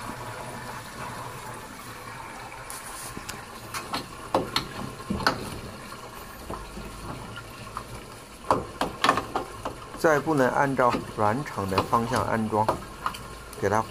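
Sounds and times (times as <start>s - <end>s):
drain pump hum: 0.0s - 13.9s
water draining rush: 0.0s - 13.9s
sharp clicks and knocks: 3.2s - 5.8s, 6.5s - 10.1s, 10.8s - 13.6s.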